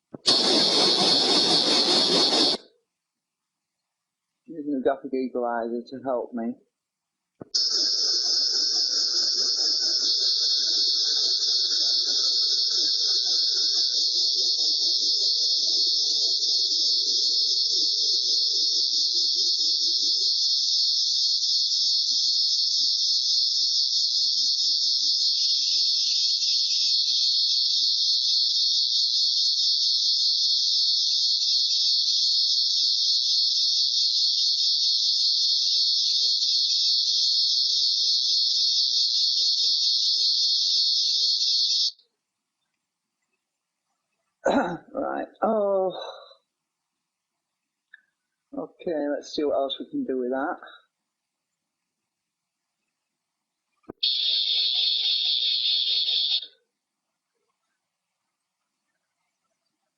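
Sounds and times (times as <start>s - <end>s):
synthesized high-pitched hiss: 0.0s - 2.8s, 4.5s - 6.6s, 7.4s - 42.2s, 44.4s - 46.6s, 47.3s - 52.2s, 53.8s - 59.9s.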